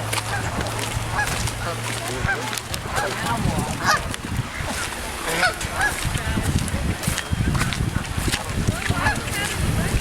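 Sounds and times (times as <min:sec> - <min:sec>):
low rumbling wind: 0:00.0 - 0:10.0
flock of birds calling: 0:00.3 - 0:06.1.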